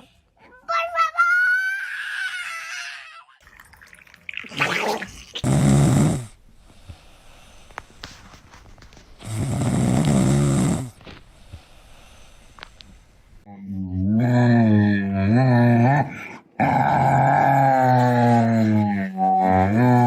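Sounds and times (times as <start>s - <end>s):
soft breath sound: 6.3s - 13.5s
dog snoring: 9.2s - 11.1s.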